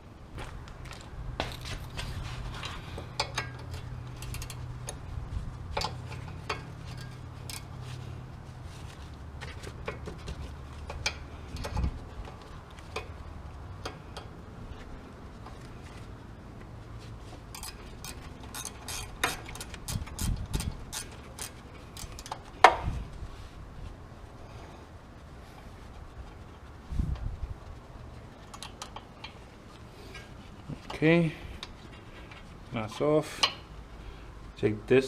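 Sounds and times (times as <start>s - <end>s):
ratchet clicking: 3.2s - 5.0s, 17.5s - 22.4s.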